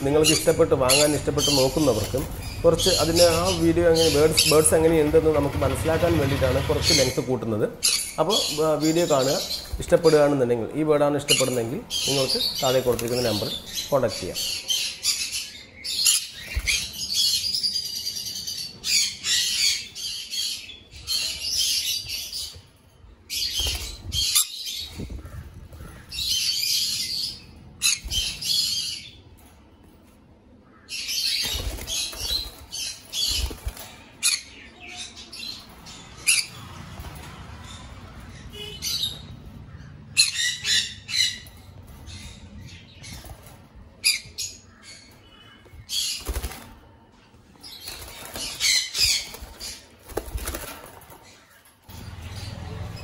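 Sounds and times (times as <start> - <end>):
parrots squawking: 0.0 - 10.2, 11.2 - 22.0, 23.3 - 29.3, 30.5 - 46.6
wing flapping: 31.4 - 34.1, 46.2 - 46.8, 47.9 - 51.2.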